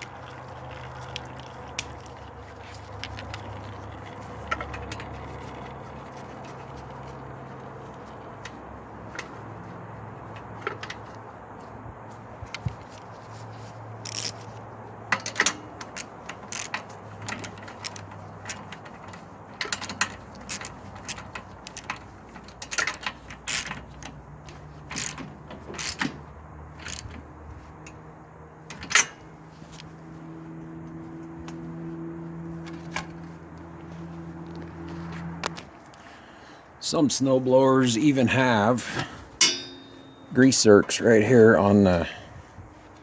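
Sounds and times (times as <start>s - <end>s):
metal tools clinking: 12.5s - 27.2s, 28.7s - 29.9s, 38.6s - 41.0s.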